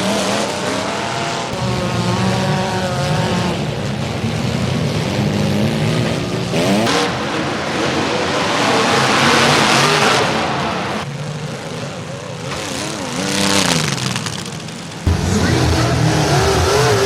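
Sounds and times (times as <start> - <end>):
car engines revving: 0.0 - 17.0
dense wash of noise: 6.9 - 11.1, 15.1 - 17.0
deep loud engine: 15.0 - 17.0.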